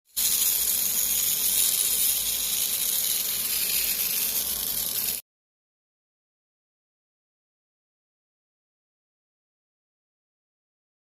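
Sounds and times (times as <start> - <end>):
small electric motor whirring: 0.0 - 5.2.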